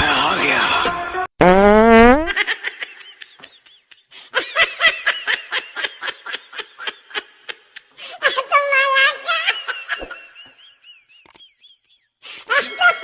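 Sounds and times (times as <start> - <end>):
laughter in quick bursts: 2.3 - 8.0, 9.5 - 13.0.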